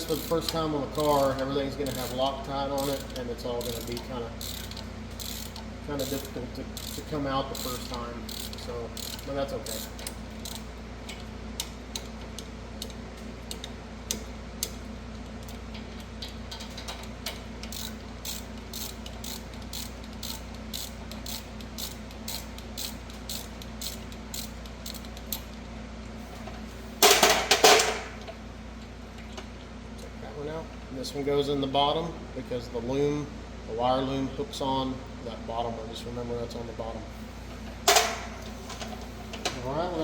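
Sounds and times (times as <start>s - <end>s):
ratchet wrench clicking: 0.0s - 25.6s.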